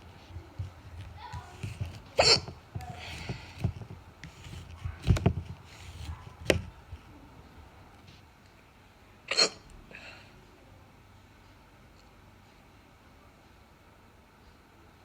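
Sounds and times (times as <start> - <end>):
woman hiccuping: 2.2 - 2.5.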